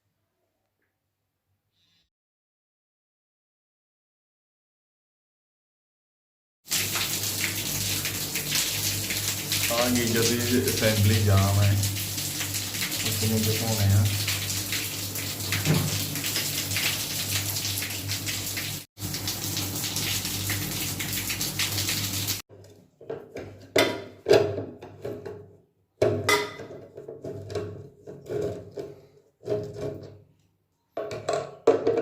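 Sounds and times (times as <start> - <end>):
water running from a tap: 6.7 - 22.5.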